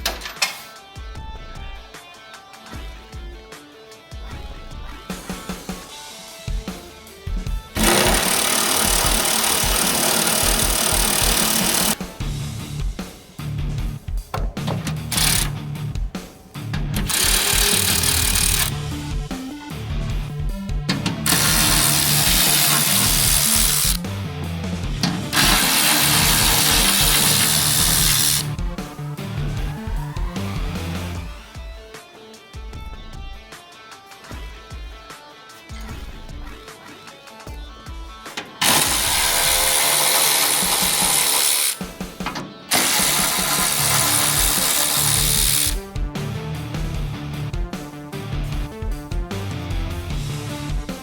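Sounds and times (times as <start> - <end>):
background music: 0.0 - 51.0
power tool running: 7.7 - 12.3, 15.0 - 15.6, 17.0 - 18.8, 21.1 - 24.0, 25.0 - 28.6, 38.6 - 45.8.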